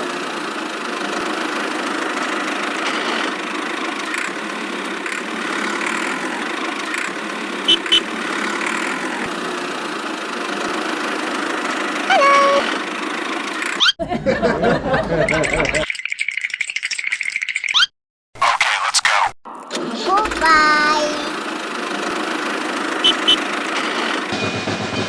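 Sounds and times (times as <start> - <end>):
short beep: 7.7 - 8.0, 23.0 - 23.4.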